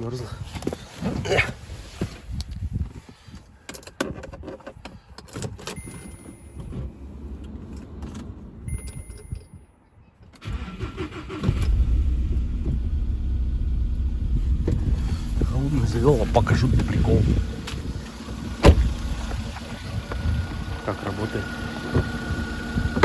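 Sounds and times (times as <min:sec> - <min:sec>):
car engine cranking: 0:05.3 - 0:09.4, 0:10.4 - 0:23.0
car engine running: 0:10.5 - 0:23.0.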